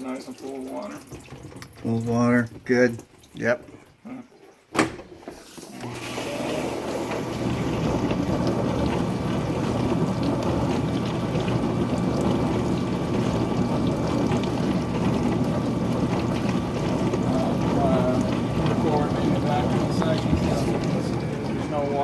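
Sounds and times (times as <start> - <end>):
dishwasher pump running: 0.0 - 4.0, 4.8 - 22.0
water spraying and sloshing: 0.0 - 22.0
dishwasher click: 4.8 - 5.2.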